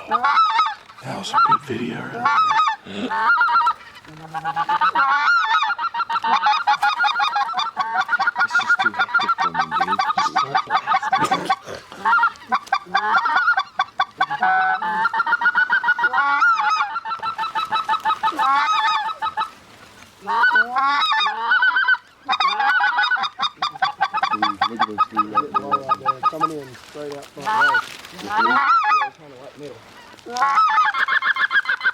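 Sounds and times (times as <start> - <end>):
geese honking: 0.0 - 31.9.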